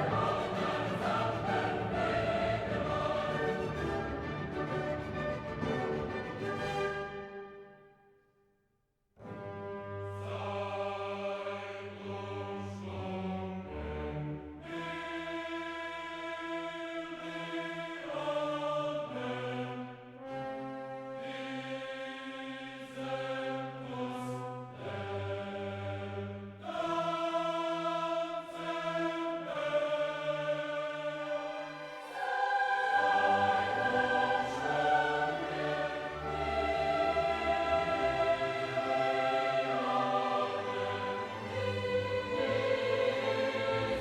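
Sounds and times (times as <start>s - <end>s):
music with slow sustained chords: 31.5s - 44.0s.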